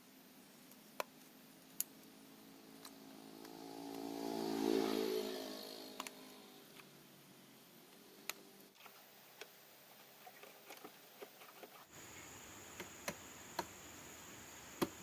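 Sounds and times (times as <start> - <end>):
passing engine: 2.1 - 7.2.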